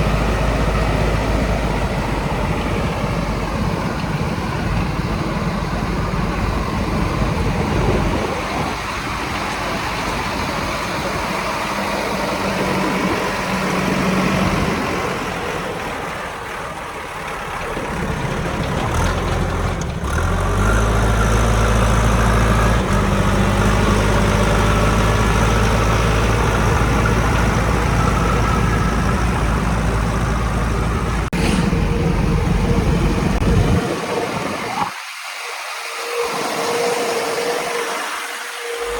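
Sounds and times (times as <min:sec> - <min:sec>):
diesel machinery engine running: 0:00.0 - 0:34.8, 0:35.9 - 0:38.9
deep engine note: 0:22.8 - 0:33.8.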